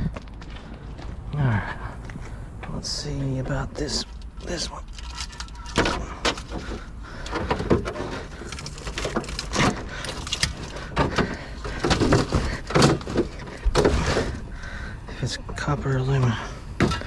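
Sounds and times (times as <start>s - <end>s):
scrap being rummaged through: 4.0s - 14.5s.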